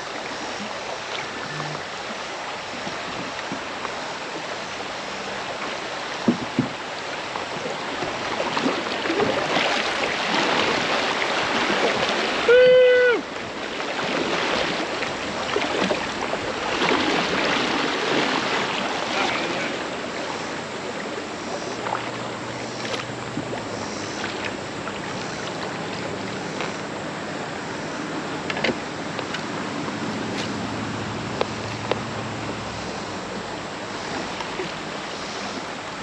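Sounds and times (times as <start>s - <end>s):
creek water lapping: 0.0s - 36.0s.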